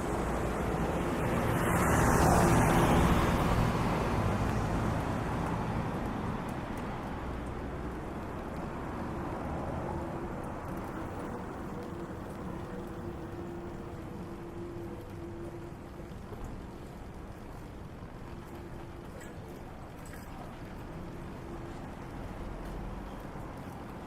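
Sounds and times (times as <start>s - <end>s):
car passing by: 0.0s - 6.8s
street traffic noise: 0.0s - 24.0s.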